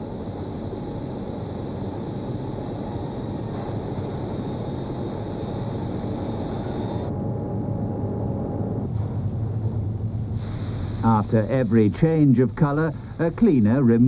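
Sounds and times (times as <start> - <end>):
spray hiss: 0.0 - 7.1, 10.4 - 14.0
low machinery rumble: 0.0 - 14.0.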